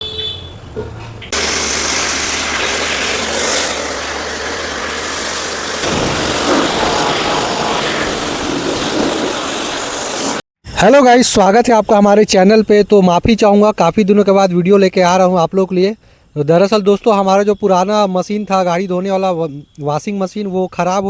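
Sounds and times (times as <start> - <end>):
pressure washer spraying water: 1.3 - 10.4.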